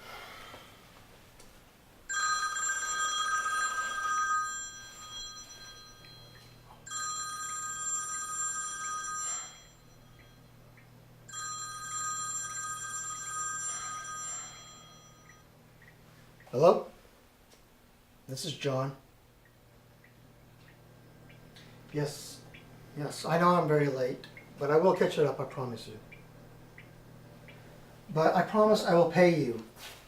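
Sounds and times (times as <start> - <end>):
telephone ringing: 2.1 - 10.6, 11.3 - 15.5.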